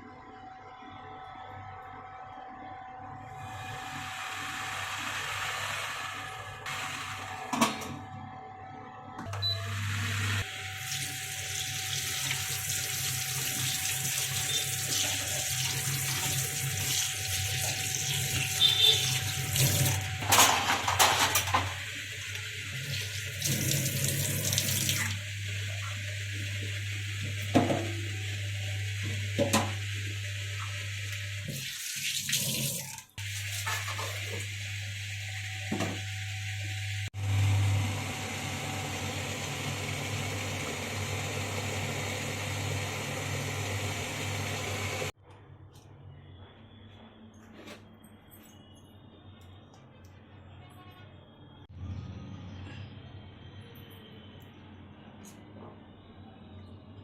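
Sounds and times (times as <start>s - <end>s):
tap water running into sink: 10.8s - 20.0s, 22.3s - 26.0s, 30.6s - 34.5s.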